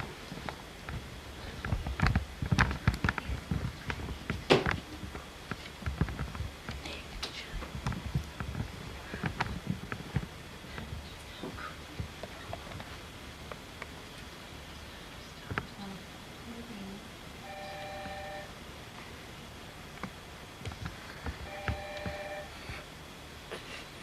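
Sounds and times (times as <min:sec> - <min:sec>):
soft footsteps on stairs: 0:00.0 - 0:13.1.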